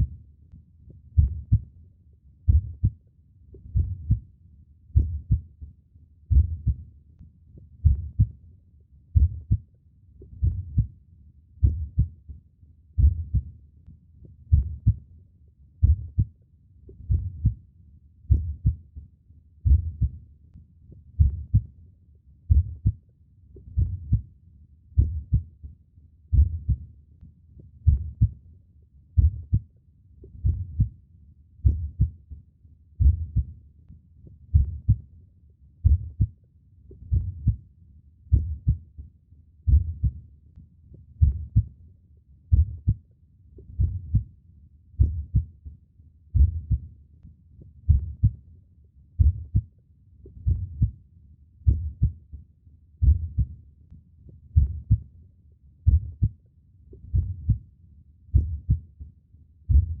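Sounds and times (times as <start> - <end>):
human heartbeat: 0.0 - 0.2, 0.9 - 1.7, 2.5 - 4.3, 4.9 - 6.9, 7.6 - 8.4, 9.1 - 11.0, 11.6 - 13.6, 14.2 - 15.1, 15.8 - 19.0, 19.6 - 20.3, 20.9 - 21.8, 22.5 - 23.0, 23.6 - 24.3, 24.9 - 25.7, 26.3 - 26.9, 27.6 - 28.4, 29.2 - 31.0, 31.6 - 32.4, 33.0 - 33.6, 34.2 - 35.1, 35.8 - 37.6, 38.3 - 39.0, 39.7 - 40.2, 40.9 - 41.8, 42.5 - 43.0, 43.6 - 44.3, 45.0 - 45.7, 46.3 - 46.9, 47.6 - 48.4, 49.2 - 51.0, 51.6 - 52.4, 53.0 - 53.6, 54.3 - 55.1, 55.8 - 57.7, 58.3 - 60.0.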